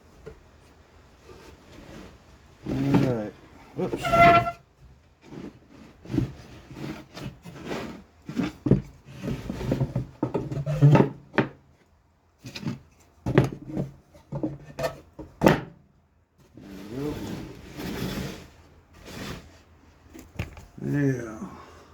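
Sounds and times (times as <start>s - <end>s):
wooden boards knocking and scraping: 8.3s - 11.6s, 12.5s - 15.8s.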